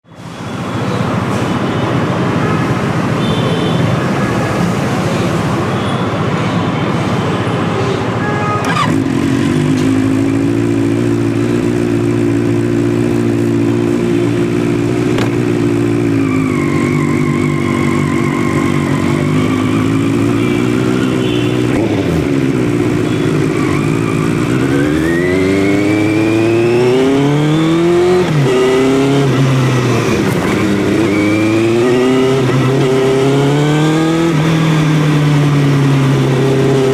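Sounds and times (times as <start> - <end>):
motorcycle engine revving: 8.6 - 36.9.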